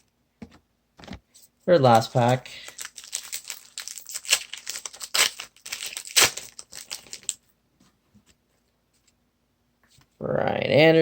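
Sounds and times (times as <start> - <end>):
card pack wrapper tearing and crinkling: 1.8 - 7.4.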